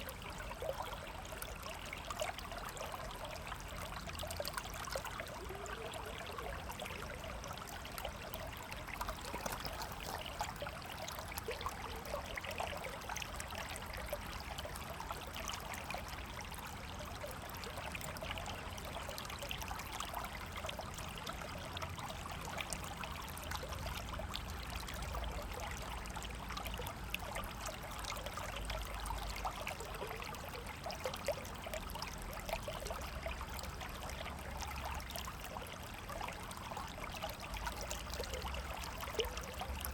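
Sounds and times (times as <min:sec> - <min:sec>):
river water over rocks: 0:00.0 - 0:17.6.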